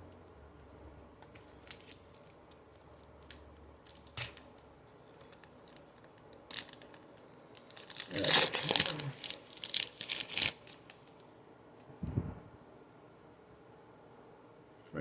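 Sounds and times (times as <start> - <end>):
cards rustling: 1.3 - 11.2.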